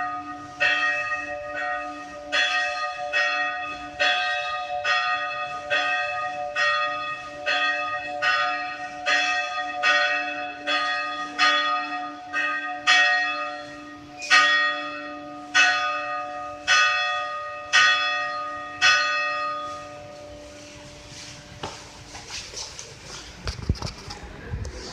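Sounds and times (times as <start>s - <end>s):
church bell tolling: 0.0s - 21.8s.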